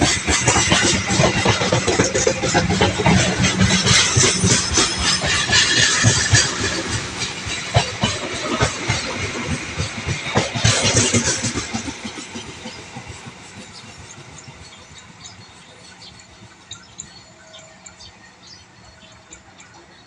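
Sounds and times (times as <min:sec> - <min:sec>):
train wheels clacking: 0:00.0 - 0:20.0.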